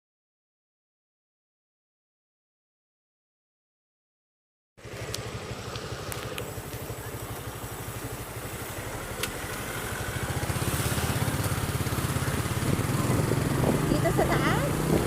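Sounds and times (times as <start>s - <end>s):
vehicle engine running: 4.8s - 15.0s.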